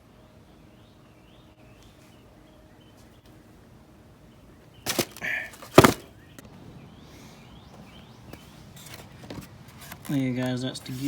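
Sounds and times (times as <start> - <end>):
faint birds chirping: 0.0 - 11.0
rustling and handling noise: 4.6 - 6.4, 7.8 - 11.0.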